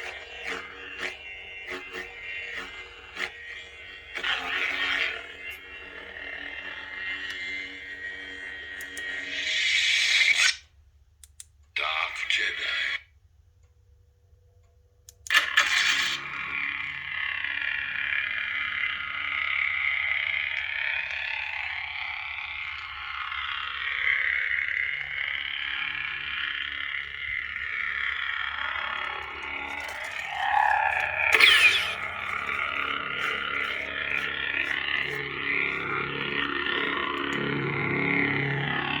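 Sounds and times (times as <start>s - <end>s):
lightsaber hum: 0.0s - 10.6s, 15.8s - 39.0s
sharp burst: 29.5s - 35.2s.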